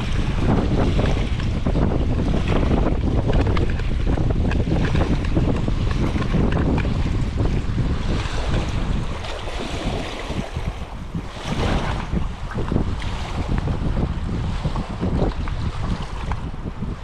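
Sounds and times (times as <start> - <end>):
sea waves washing: 0.0 - 17.0
wind buffeting microphone: 0.0 - 17.0.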